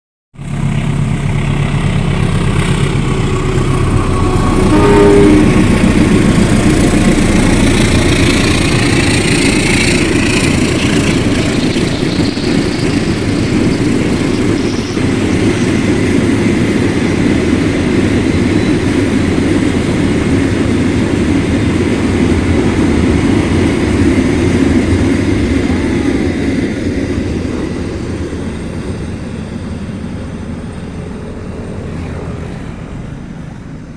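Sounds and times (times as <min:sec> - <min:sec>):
train rumbling past: 0:00.4 - 0:33.9
train horn blast: 0:03.3 - 0:08.7.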